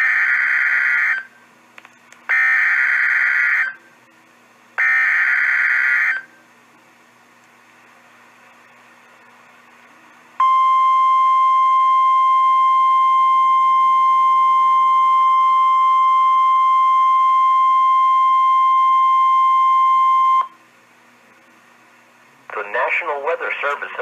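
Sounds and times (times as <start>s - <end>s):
steady high alarm tone: 0.0s - 1.3s, 2.3s - 3.8s, 4.8s - 6.3s.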